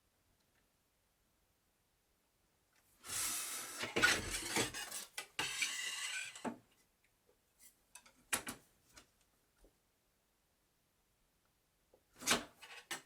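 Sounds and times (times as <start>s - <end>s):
wood scraping: 3.1s - 6.5s.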